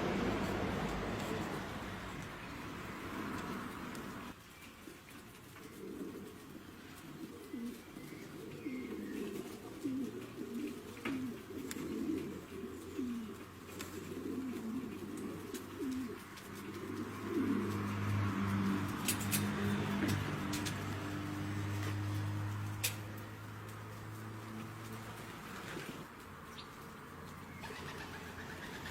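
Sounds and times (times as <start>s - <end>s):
pigeon cooing: 2.8s - 4.4s, 5.4s - 23.7s, 26.8s - 28.9s.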